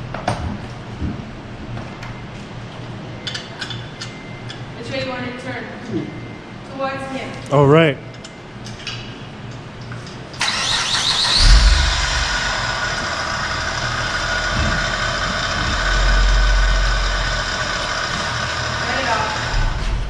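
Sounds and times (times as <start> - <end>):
car engine starting and idling: 10.4 - 20.0.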